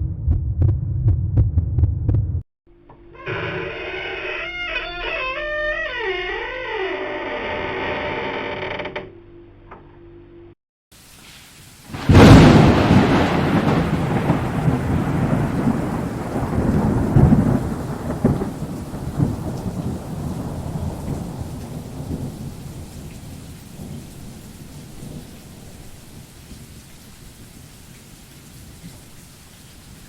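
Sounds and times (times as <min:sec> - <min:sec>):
thunder crack and rumble: 0:00.0 - 0:02.4, 0:11.9 - 0:26.6
rain: 0:10.9 - 0:30.0.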